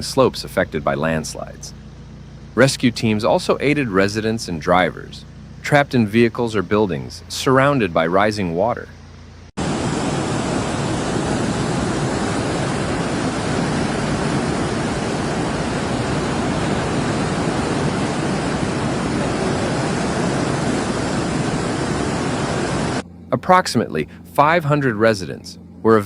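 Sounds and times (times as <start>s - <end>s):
rushing floodwater: 9.6s - 23.0s.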